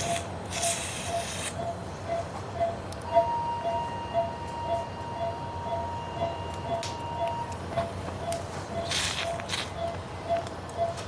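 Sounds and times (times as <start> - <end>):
patient monitor beeping: 0.0 - 11.0.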